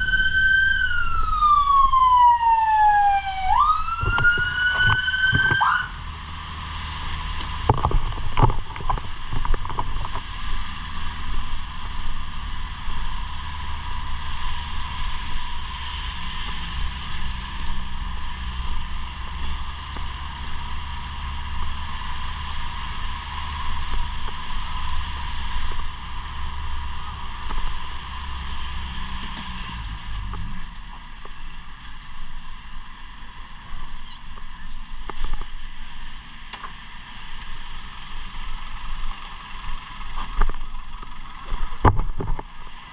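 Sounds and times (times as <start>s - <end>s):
fire truck siren: 0.0s - 6.1s
truck engine and road noise: 0.0s - 42.9s.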